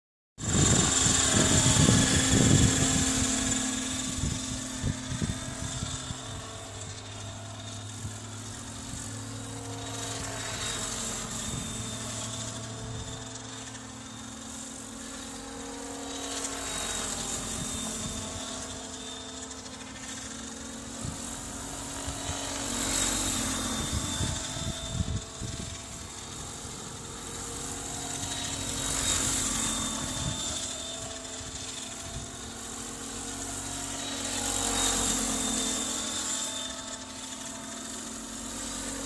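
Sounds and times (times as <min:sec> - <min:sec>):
wind buffeting microphone: 0:00.4 - 0:07.0, 0:23.7 - 0:27.1, 0:29.9 - 0:32.5
model helicopter rotor drone: 0:00.4 - 0:39.0.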